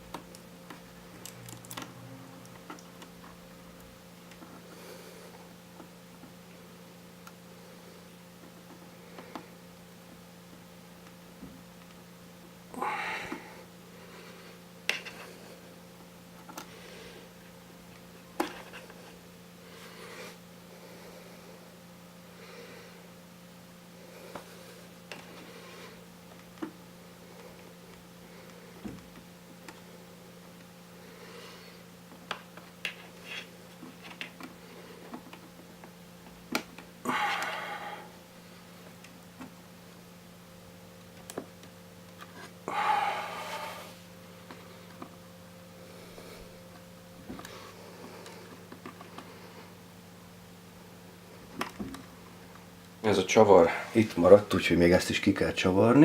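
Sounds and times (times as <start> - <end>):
faint steady hum: 0.0 - 56.0.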